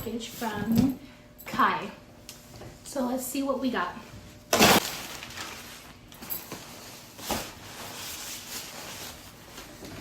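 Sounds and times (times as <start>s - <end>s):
packaging rustling and crinkling: 4.5s - 10.0s.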